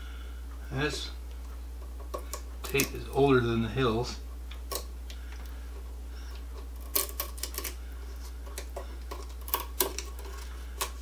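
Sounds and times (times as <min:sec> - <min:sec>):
electrical tape crackling off wires: 0:01.0 - 0:11.0.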